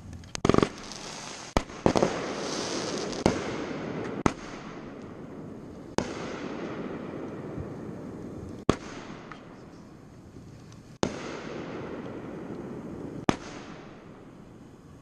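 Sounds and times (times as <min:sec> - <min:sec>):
fireworks bangs: 0:00.3 - 0:15.0.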